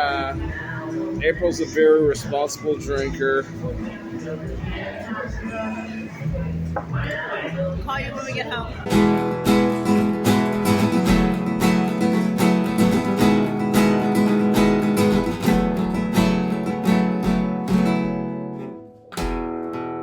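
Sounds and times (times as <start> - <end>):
strummed acoustic guitar: 8.8 - 20.0.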